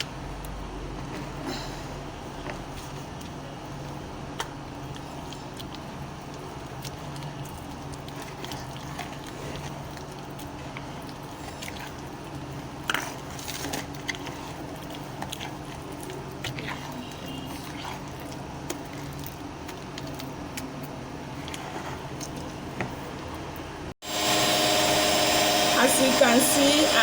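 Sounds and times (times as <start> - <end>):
wet squelching: 2.8 - 22.8
electric hand mixer running: 24.0 - 27.0.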